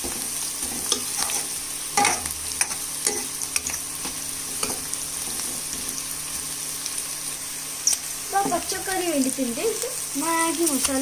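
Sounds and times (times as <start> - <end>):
utensil scraping a pan: 0.0 - 6.0
vegetables sizzling in a pan: 0.0 - 11.0.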